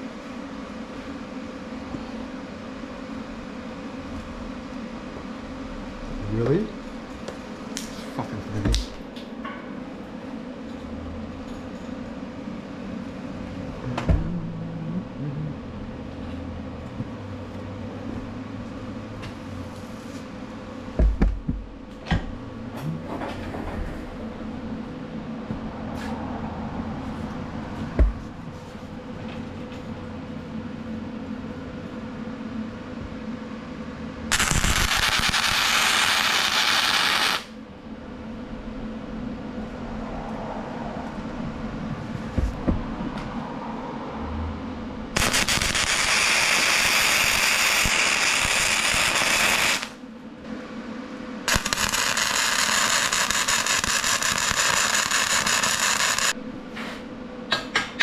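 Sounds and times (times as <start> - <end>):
steady low hum: 0.0 - 58.0
welding arc crackling: 34.3 - 37.6, 45.2 - 50.0, 51.5 - 56.4.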